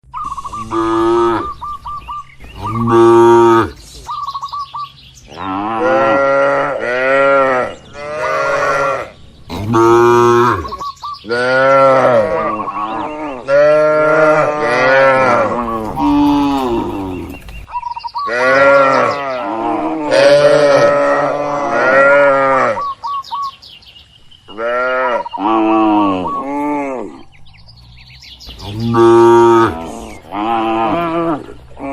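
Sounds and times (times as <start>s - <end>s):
cattle mooing: 0.5s - 1.6s, 2.6s - 3.8s, 5.3s - 17.4s, 18.3s - 22.9s, 28.6s - 31.9s.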